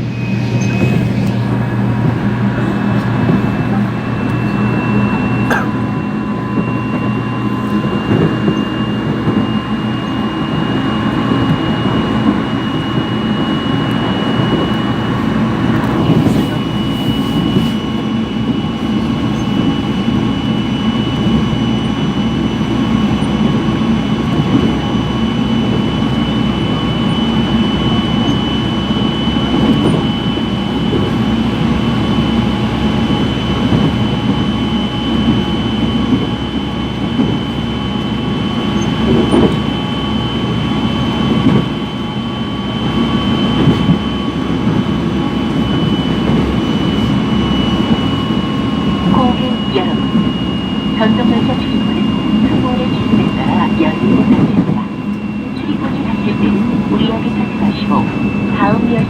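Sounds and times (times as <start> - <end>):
high whine: 0.0 - 59.0
train rolling rumble: 0.0 - 59.0.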